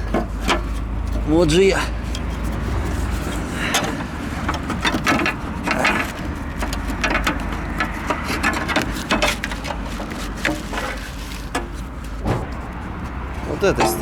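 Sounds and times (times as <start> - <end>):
plastic cover crackling and clicking: 4.2 - 13.2.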